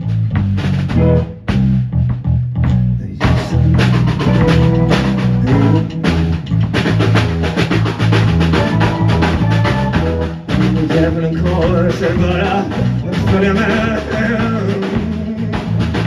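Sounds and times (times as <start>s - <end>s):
bass drum and snare hits: 0.0s - 16.0s
instrumental rock band: 0.0s - 16.0s
low sustained bass notes: 0.0s - 16.0s.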